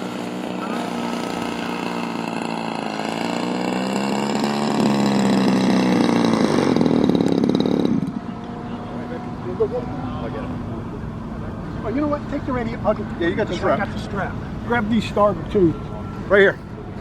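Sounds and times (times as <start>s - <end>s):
model airplane engine running: 0.0s - 13.4s.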